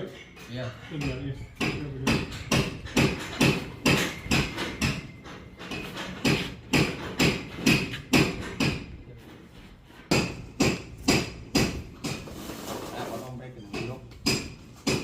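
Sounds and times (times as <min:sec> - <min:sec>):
hammer blows: 0:01.0 - 0:08.9.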